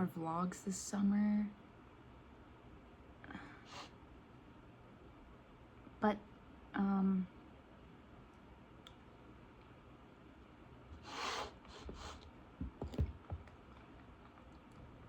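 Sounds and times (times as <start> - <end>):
soft knocks: 12.6 - 13.5.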